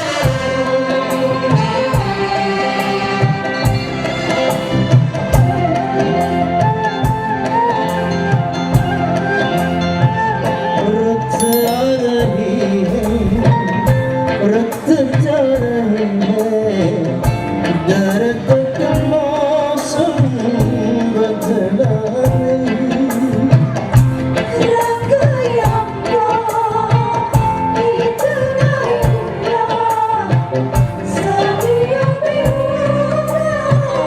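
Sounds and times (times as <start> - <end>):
wavering lead melody: 11.4 - 12.8.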